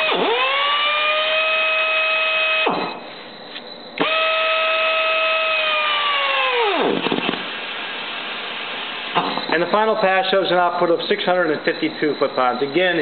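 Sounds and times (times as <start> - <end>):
pneumatic torque wrench whining: 0.0 - 3.2, 4.0 - 9.4.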